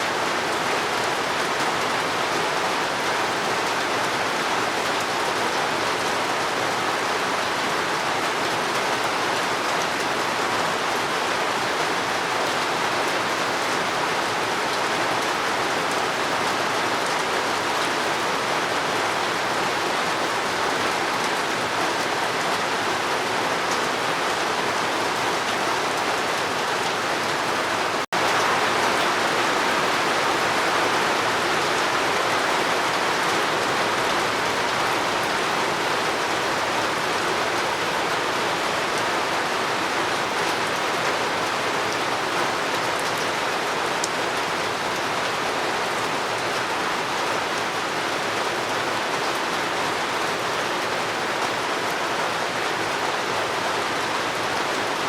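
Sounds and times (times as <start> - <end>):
rain falling: 0.0 - 55.0.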